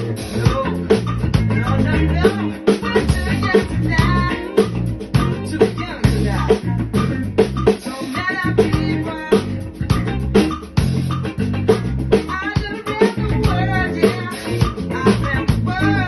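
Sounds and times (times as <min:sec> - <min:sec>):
person singing: 0:00.0 - 0:04.7, 0:05.3 - 0:07.1, 0:07.8 - 0:10.1, 0:12.2 - 0:16.0
drums: 0:00.0 - 0:16.0
electric bass funk line: 0:00.0 - 0:16.0.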